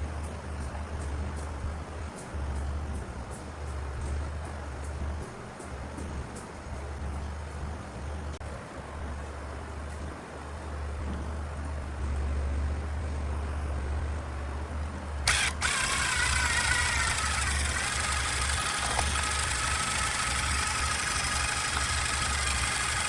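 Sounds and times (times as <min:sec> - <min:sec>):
grinding noise with high whine: 0:00.0 - 0:08.4, 0:11.1 - 0:23.0
power tool motor humming: 0:15.3 - 0:23.0.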